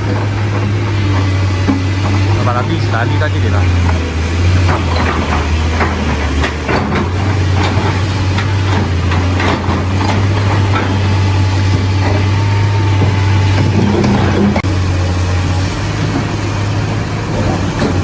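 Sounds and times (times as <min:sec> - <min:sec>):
diesel engine humming: 0:00.0 - 0:18.0
knocks and clanks: 0:03.6 - 0:14.7.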